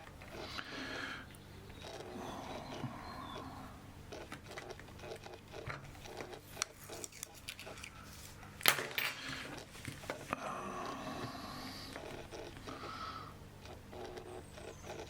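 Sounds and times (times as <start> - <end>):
backing tape rustling: 4.1 - 10.4.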